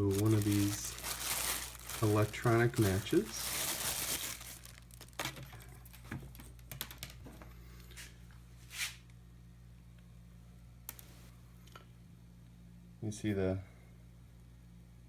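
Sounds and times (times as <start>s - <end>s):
packaging rustle: 0.0s - 7.2s
faint steady hum: 0.0s - 15.0s.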